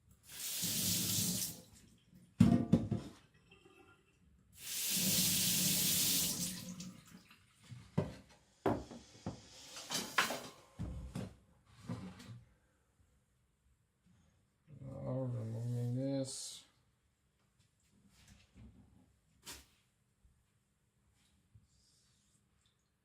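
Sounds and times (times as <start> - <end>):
water running from a tap: 0.2 - 1.7, 4.6 - 7.4.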